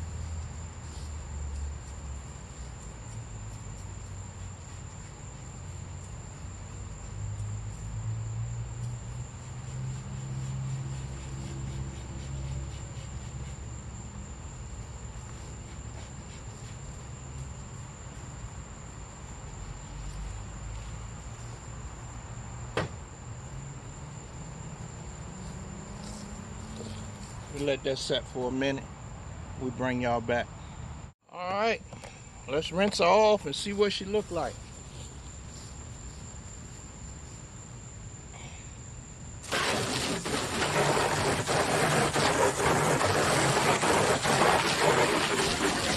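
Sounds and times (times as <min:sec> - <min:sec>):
hose water splashing on metal: 0:39.4 - 0:45.9.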